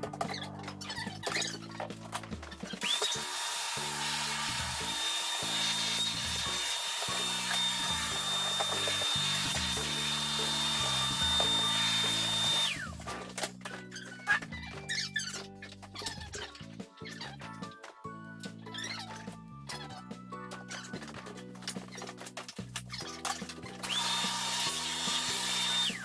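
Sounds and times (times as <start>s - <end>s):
background music: 0.0s - 26.0s
power drill whining: 2.6s - 13.4s, 23.0s - 26.0s.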